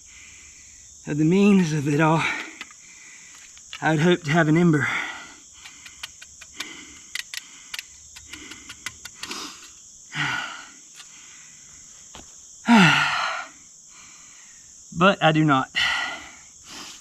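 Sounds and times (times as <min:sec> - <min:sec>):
man breathing hard: 0:00.0 - 0:00.9, 0:02.2 - 0:03.7, 0:04.6 - 0:11.8, 0:12.6 - 0:14.8, 0:15.8 - 0:17.0
light clicks: 0:05.6 - 0:09.8
man sighing: 0:12.7 - 0:13.5.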